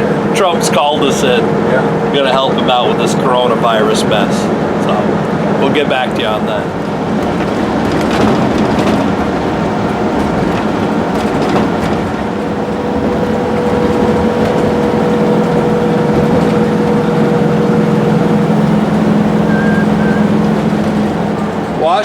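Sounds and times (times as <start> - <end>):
engine and road noise: 0.0 - 22.0
steady drone: 12.2 - 22.0.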